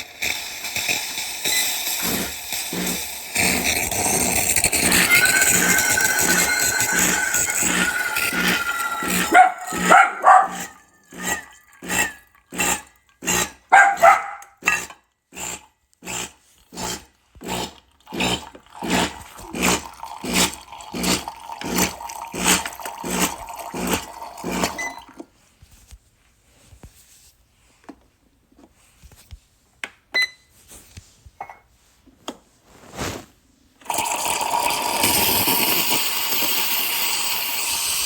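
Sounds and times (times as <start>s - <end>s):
dog barking and yelping: 9.0s - 11.4s, 13.7s - 14.5s.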